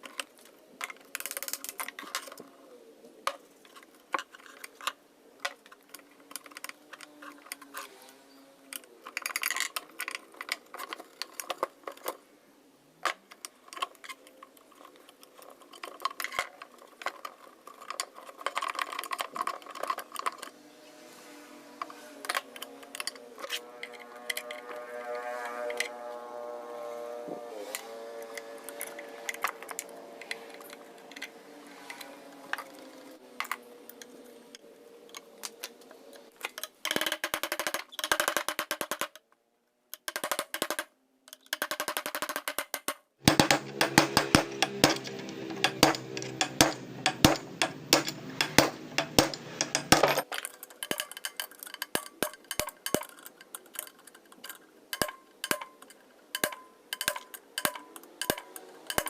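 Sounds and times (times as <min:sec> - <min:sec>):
small metal parts clinking: 0:00.0 - 0:02.5, 0:08.6 - 0:12.2, 0:13.0 - 0:20.6, 0:22.2 - 0:24.9, 0:27.7 - 0:39.2, 0:40.0 - 0:59.0.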